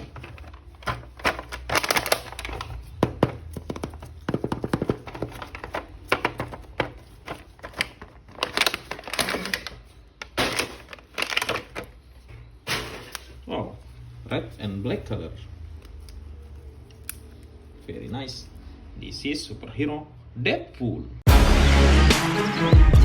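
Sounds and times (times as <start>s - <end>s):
packaging rustling: 0.0s - 13.4s.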